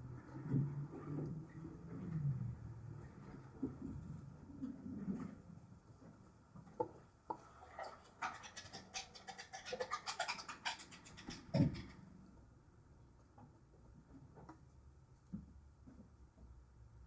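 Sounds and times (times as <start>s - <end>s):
clicks and scratching of small parts: 7.7s - 12.0s.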